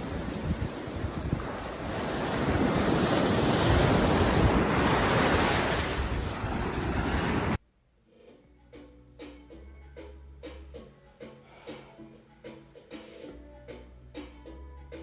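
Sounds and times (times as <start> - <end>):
water rushing: 0.0 - 7.6
wind buffeting microphone: 0.0 - 7.6.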